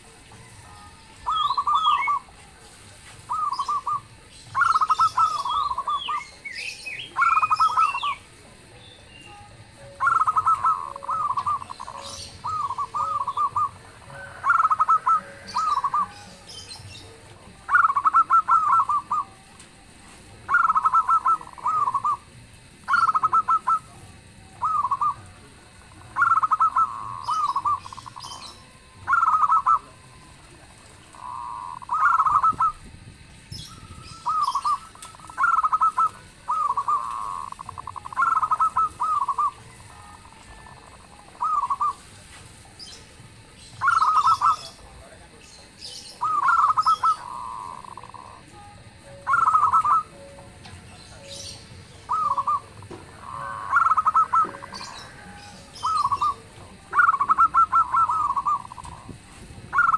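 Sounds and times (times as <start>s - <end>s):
doves cooing: 0.0s - 59.9s.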